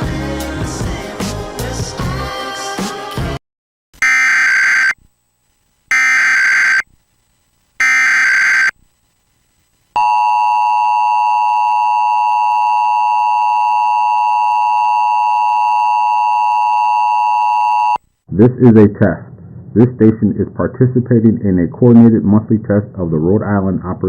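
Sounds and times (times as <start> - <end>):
short data bursts: 4.0 - 5.0, 5.9 - 6.9, 7.8 - 8.8.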